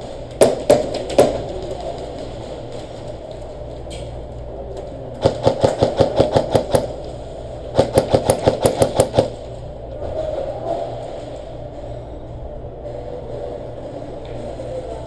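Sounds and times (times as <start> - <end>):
airsoft gun firing: 5.2 - 7.0, 7.7 - 9.4.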